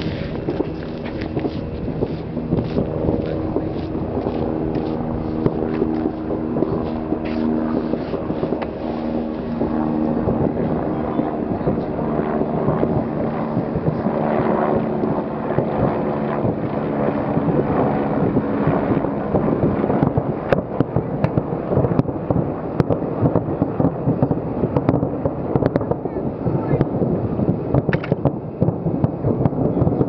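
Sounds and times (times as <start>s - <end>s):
fireworks bangs and cracks: 0.0s - 12.0s, 20.0s - 30.0s
rushing wind: 0.0s - 30.0s
steady low hum: 0.0s - 30.0s.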